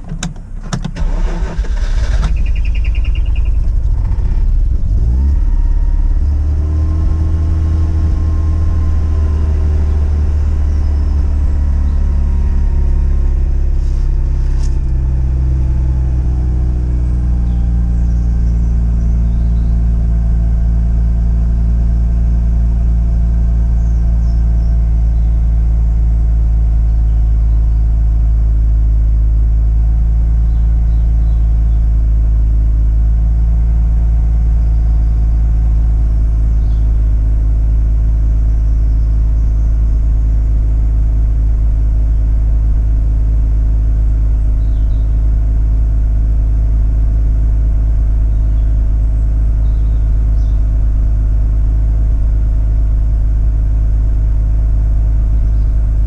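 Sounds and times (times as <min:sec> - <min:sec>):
rotary engine idling: 0:00.0 - 0:21.2.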